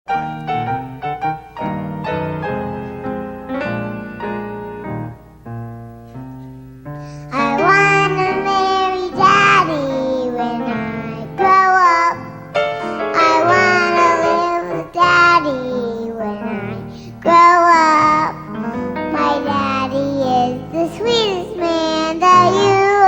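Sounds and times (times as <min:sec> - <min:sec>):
musical accompaniment: 0:00.1 - 0:23.0
child singing: 0:07.3 - 0:12.4, 0:13.1 - 0:23.0.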